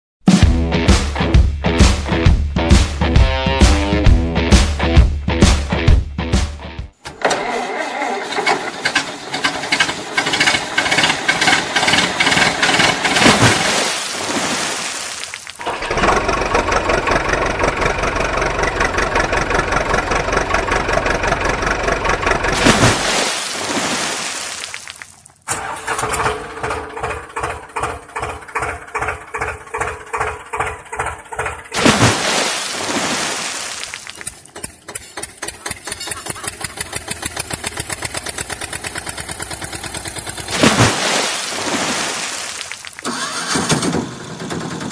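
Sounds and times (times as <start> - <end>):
tractor engine idling: 7.1 - 13.2, 15.6 - 22.6, 25.5 - 31.8, 34.1 - 40.6, 42.8 - 44.9.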